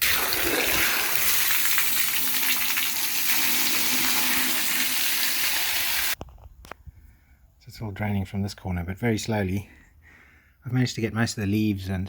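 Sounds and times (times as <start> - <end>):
water gushing from tank: 0.0 - 6.2.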